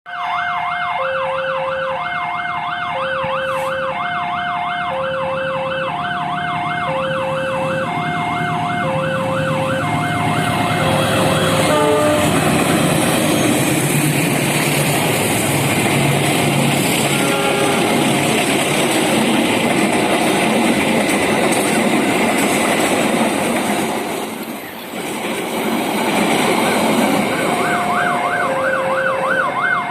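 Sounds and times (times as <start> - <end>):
ambulance siren wailing: 0.1 - 14.4, 16.8 - 18.7, 27.2 - 29.9
passenger train passing: 0.1 - 29.9.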